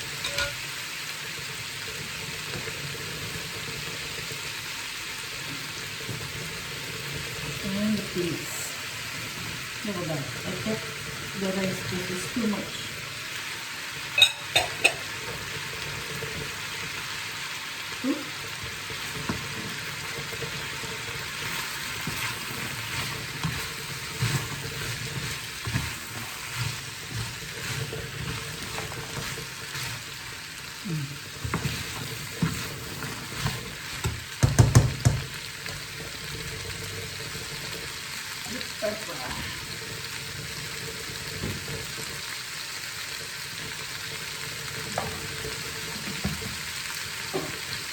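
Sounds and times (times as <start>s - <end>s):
food sizzling in a frying pan: 0.0s - 47.9s
utensil knocking against pan: 34.0s - 35.3s.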